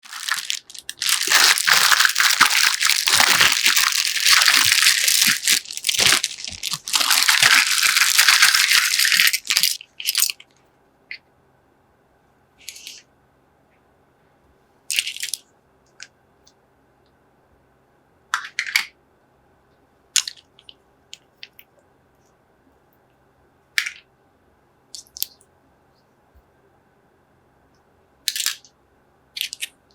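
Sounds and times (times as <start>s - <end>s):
packaging crinkling and rattling: 0.0s - 10.4s
plastic toy pieces clicking: 0.1s - 10.5s, 29.4s - 29.7s.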